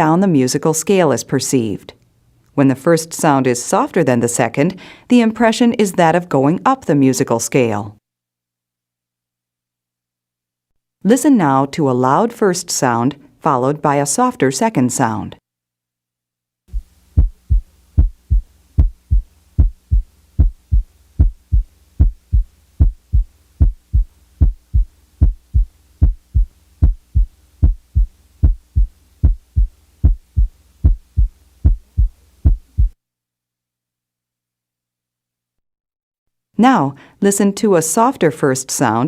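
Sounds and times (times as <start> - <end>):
faint steady hum: 0.0 - 7.1, 16.7 - 33.0
heartbeat lub-dub: 16.7 - 33.0.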